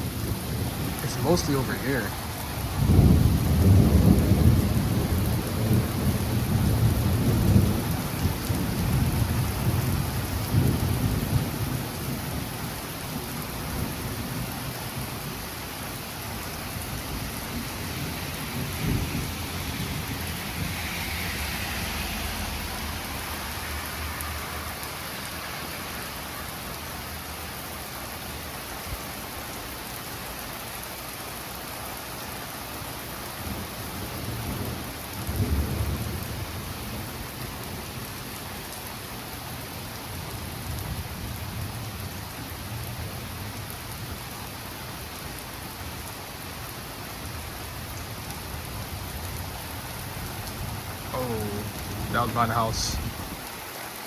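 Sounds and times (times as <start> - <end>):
heavy rain hissing: 0.0 - 37.2, 49.5 - 54.0
thunder rumbling: 2.8 - 11.8, 17.3 - 24.1.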